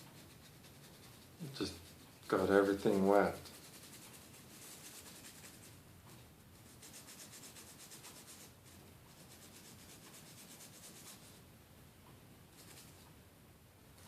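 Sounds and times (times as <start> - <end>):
toothbrush scrubbing circuit board: 0.0 - 5.7.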